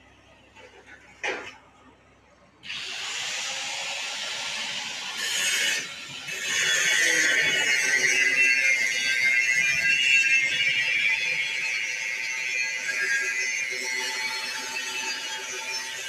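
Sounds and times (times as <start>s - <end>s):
angle grinder grinding metal: 2.7s - 10.3s.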